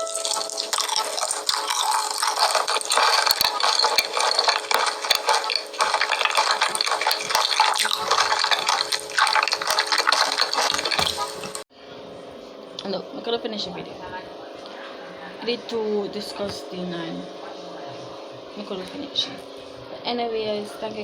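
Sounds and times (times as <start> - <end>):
wet crackling chewing: 0.0 - 11.6.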